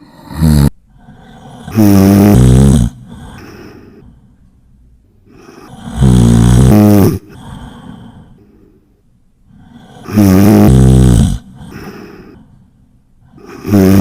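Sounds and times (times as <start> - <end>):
person snoring loudly: 0.0 - 3.6, 5.3 - 8.4, 9.5 - 12.4, 13.3 - 14.0.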